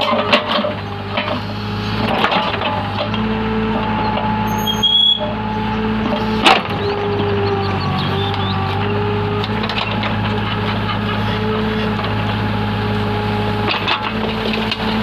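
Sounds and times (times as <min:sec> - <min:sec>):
backhoe engine running: 0:00.0 - 0:15.0
high squeal: 0:04.5 - 0:07.0.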